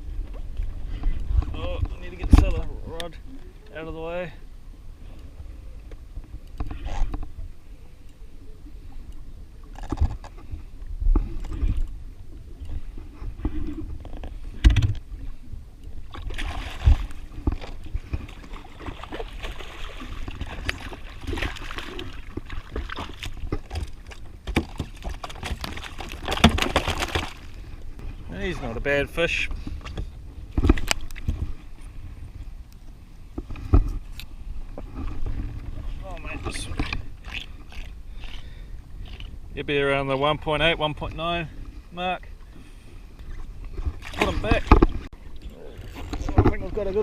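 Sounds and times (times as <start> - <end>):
water lapping against hull: 0.0 - 47.0
water splashing: 16.0 - 27.8, 43.3 - 47.0.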